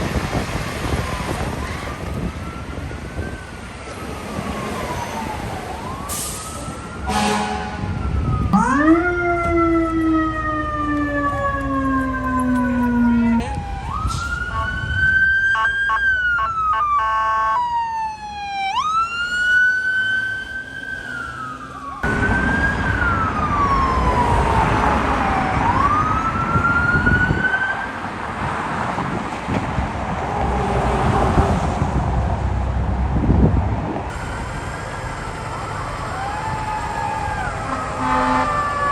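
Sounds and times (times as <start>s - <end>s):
fire engine siren wailing: 0.0s - 28.1s, 34.1s - 38.9s
traffic noise: 0.0s - 38.9s.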